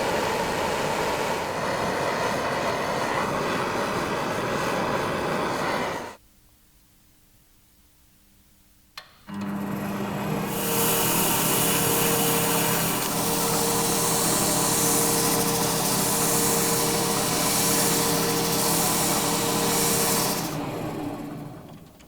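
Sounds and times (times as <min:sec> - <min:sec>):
electric power tool running: 0:09.3 - 0:22.0.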